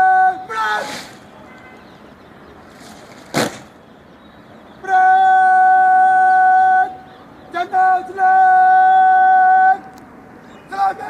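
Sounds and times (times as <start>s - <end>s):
sharp thump: 3.2s - 3.7s.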